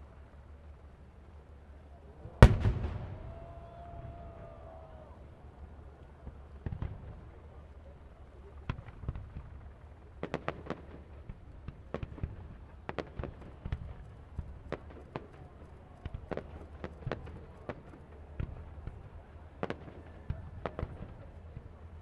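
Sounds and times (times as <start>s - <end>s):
fireworks bangs and crackling pops: 2.2s - 22.0s.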